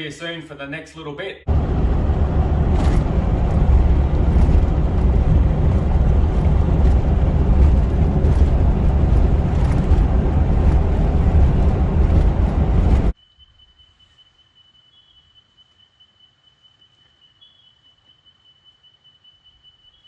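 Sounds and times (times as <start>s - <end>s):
road noise inside moving vehicle: 1.5s - 13.2s.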